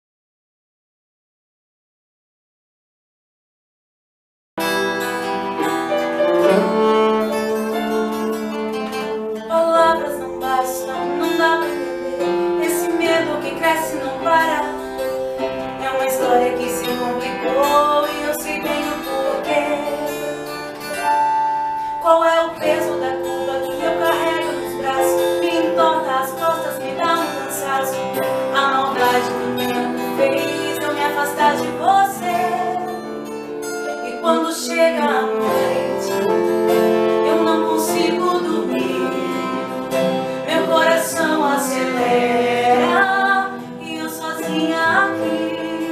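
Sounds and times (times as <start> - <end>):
band accompaniment: 4.6 - 9.2
melodic lead line: 4.6 - 34.0
plucked acoustic guitar: 4.6 - 45.9.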